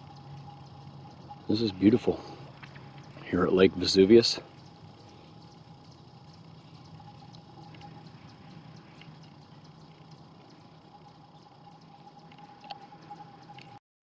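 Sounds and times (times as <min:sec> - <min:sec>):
thin constant hum: 0:00.0 - 0:13.8
soft ticks: 0:04.5 - 0:13.8.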